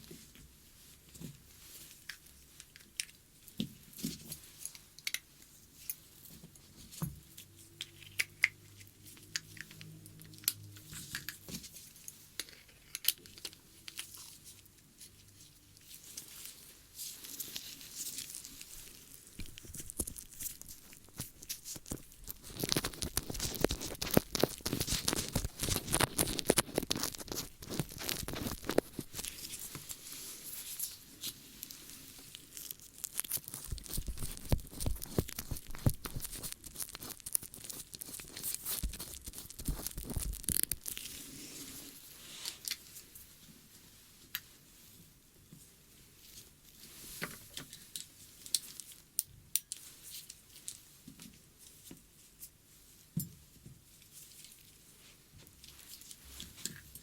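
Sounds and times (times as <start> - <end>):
crackling and scratching at microphone: 0.0 - 57.0.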